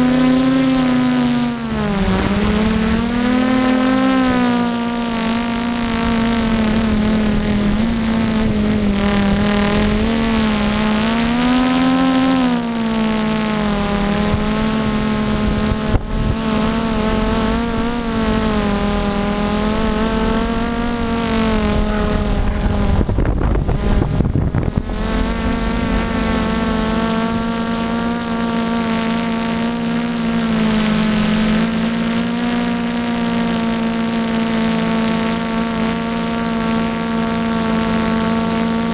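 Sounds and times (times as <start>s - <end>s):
drone motors buzzing: 0.0s - 38.9s
thin high whine: 0.0s - 38.9s
wind buffeting microphone: 1.7s - 4.6s, 5.2s - 12.4s, 13.6s - 28.4s.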